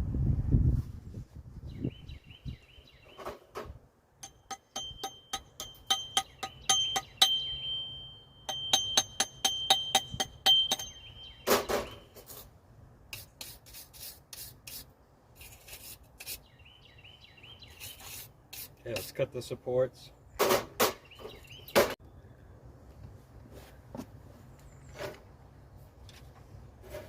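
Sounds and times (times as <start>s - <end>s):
rapid metal-on-metal tapping: 4.2s - 11.2s.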